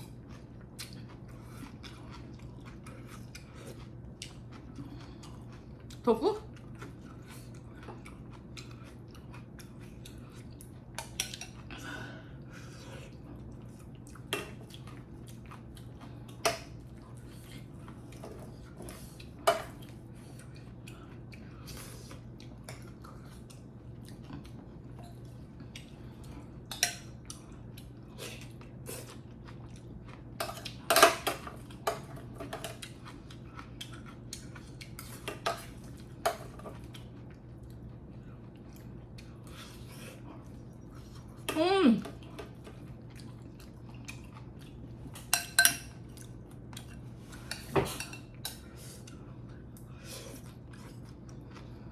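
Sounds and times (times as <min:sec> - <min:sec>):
steady low hum: 0:00.0 - 0:51.9
utensils clinking on dishes: 0:30.4 - 0:32.9, 0:45.2 - 0:46.0, 0:47.3 - 0:48.6.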